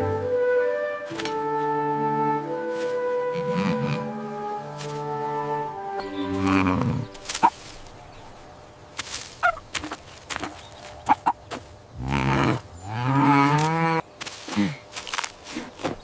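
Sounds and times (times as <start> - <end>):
cow mooing: 3.3 - 4.0, 6.3 - 7.1, 12.0 - 14.0.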